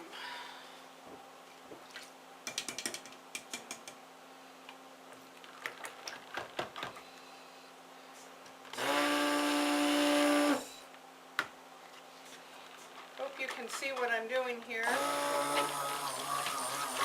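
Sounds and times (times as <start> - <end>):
stick blender humming: 8.7 - 10.8, 14.8 - 17.0.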